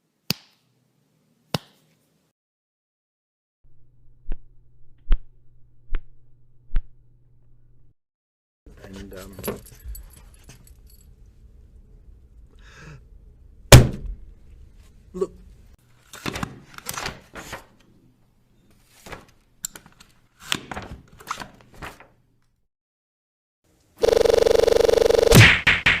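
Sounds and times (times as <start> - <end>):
punch hits: 13.7 - 14.2, 25.3 - 26.0.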